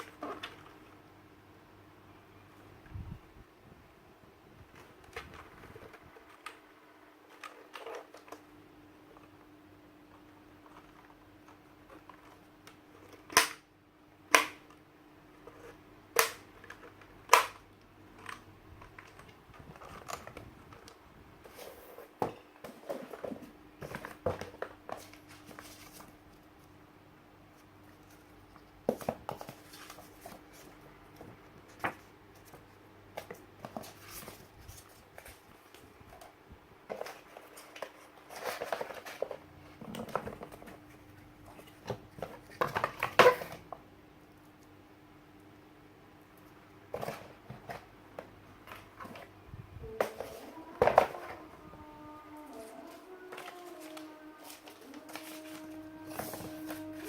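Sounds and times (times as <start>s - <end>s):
faint steady hum: 0.0s - 57.0s
rustling: 48.6s - 57.0s.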